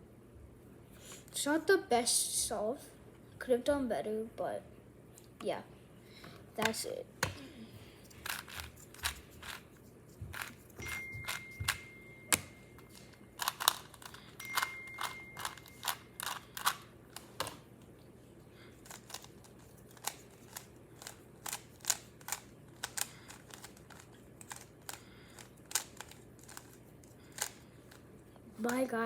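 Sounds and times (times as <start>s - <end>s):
plastic cube clicking and clacking: 8.1s - 9.6s, 13.4s - 17.6s, 18.8s - 27.6s
thin electronic tone: 10.8s - 13.4s.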